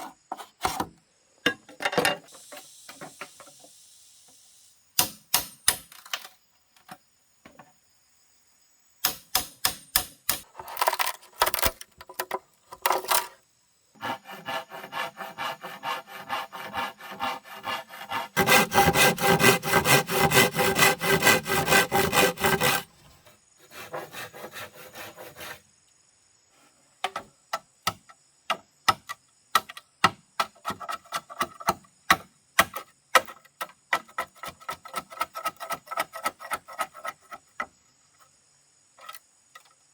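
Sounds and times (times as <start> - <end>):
hand tool rubbing wood: 14.0 - 25.6.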